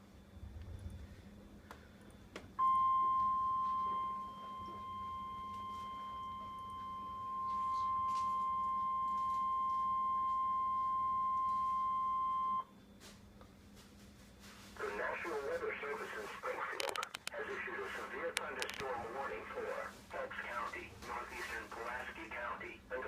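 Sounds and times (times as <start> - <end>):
steady high warning tone: 0.0 - 12.8.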